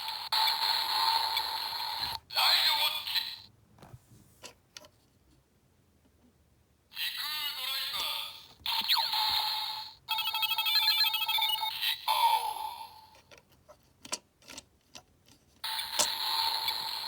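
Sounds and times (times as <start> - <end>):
toy electronic beeping tones: 8.7 - 12.2.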